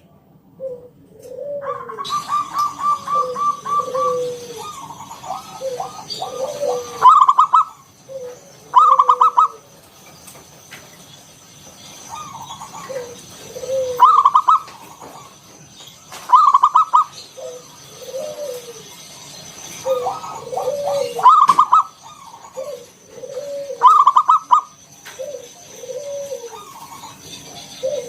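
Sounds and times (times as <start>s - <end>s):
dove cooing and stuttering: 1.2s - 9.6s, 12.1s - 15.4s, 16.3s - 18.9s, 19.8s - 27.2s.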